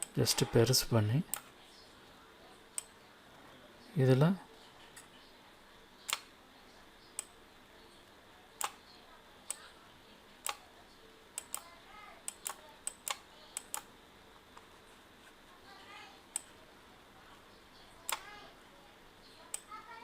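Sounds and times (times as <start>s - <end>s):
computer mouse clicking: 6.1s - 6.3s, 8.6s - 8.8s, 10.4s - 10.6s, 11.4s - 13.9s, 16.3s - 16.6s, 18.0s - 18.4s.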